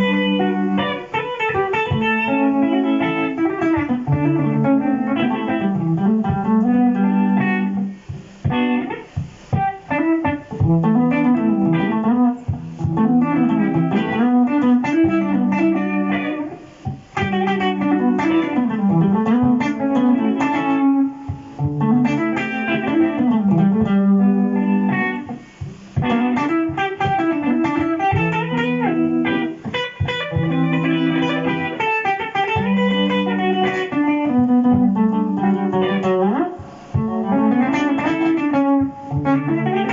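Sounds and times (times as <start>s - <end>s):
electric guitar jazz melody: 0.0s - 39.9s
looped guitar backing: 0.0s - 39.9s.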